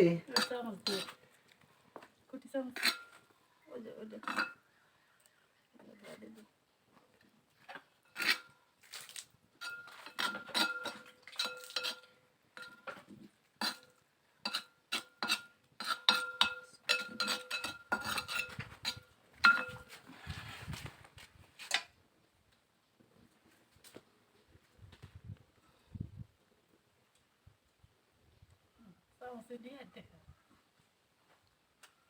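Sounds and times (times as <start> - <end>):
metal spoon clinking on metal dish: 14.5 - 19.8.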